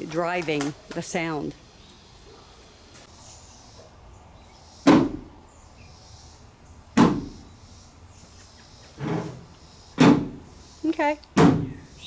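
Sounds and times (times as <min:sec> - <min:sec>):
thumps on metal van body: 0:04.9 - 0:05.3, 0:07.0 - 0:07.4, 0:10.0 - 0:10.4, 0:11.4 - 0:11.8.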